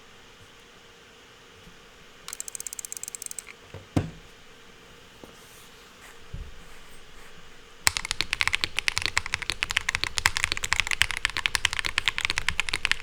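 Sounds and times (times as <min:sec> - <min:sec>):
keyboard keys clacking: 0:07.9 - 0:13.0.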